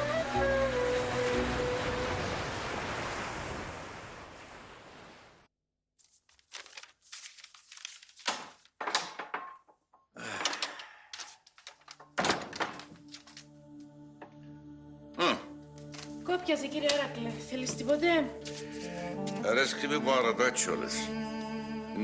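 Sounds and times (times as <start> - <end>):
knocks clicks and thuds in room: 8.2 - 13.0.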